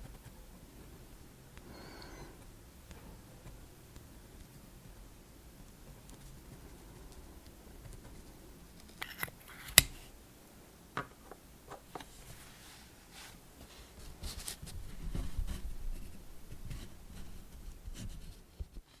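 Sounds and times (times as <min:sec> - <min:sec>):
rustling and rubbing: 0:11.2 - 0:19.0.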